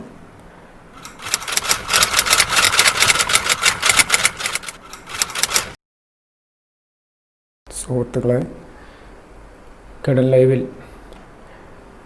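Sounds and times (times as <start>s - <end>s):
typewriter key clacks: 1.0s - 5.8s.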